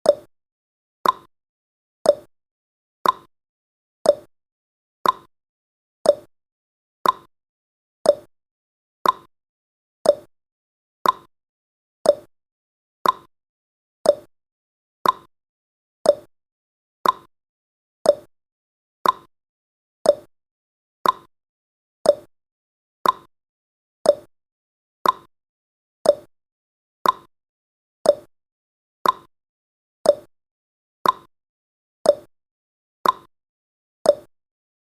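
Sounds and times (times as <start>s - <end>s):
clock ticking: 1.0s - 1.3s, 5.0s - 5.3s, 7.0s - 7.3s, 8.1s - 8.3s, 9.0s - 9.3s, 10.1s - 10.3s, 11.0s - 11.3s, 12.1s - 12.3s, 13.0s - 13.3s, 14.1s - 14.3s, 15.0s - 15.3s, 16.1s - 16.3s, 17.0s - 17.3s, 18.1s - 18.3s, 19.0s - 19.3s, 20.1s - 20.3s, 21.0s - 21.3s, 22.1s - 22.3s, 23.0s - 23.3s, 24.1s - 24.3s, 25.0s - 25.3s, 26.0s - 26.3s, 27.0s - 27.3s, 28.1s - 28.3s, 29.0s - 29.3s, 30.1s - 30.3s, 31.0s - 31.3s, 32.1s - 32.3s, 33.0s - 33.3s, 34.1s - 34.3s.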